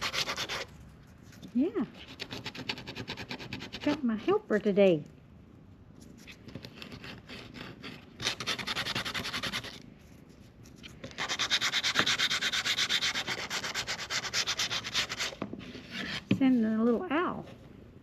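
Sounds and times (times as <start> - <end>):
hand sanding with sandpaper: 0.0 - 0.7, 1.9 - 4.4, 6.6 - 9.8, 11.2 - 16.8.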